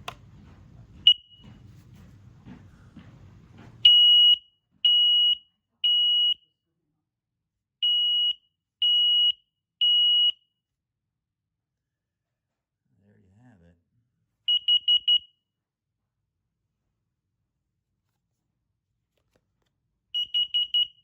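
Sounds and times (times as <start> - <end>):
smoke alarm beeps: 1.0 - 1.6, 3.8 - 6.6, 7.8 - 10.5, 14.5 - 15.4, 20.2 - 21.0.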